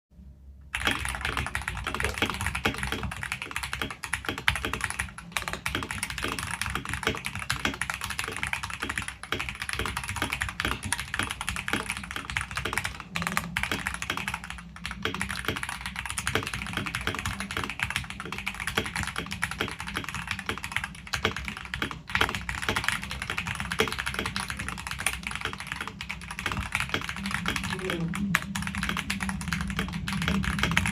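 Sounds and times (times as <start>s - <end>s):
fast typing on keyboard: 0.7s - 30.9s.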